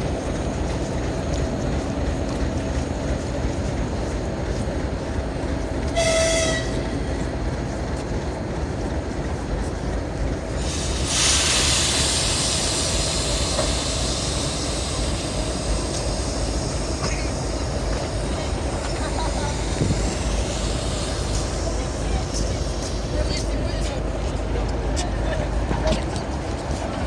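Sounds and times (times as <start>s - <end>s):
diesel locomotive rumbling: 0.0s - 27.0s
locomotive horn blast: 5.9s - 7.0s
air hissing: 10.6s - 23.6s.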